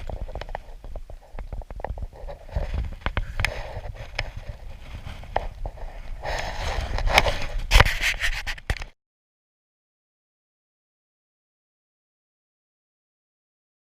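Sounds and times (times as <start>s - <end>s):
scraping and rubbing: 0.0s - 9.0s.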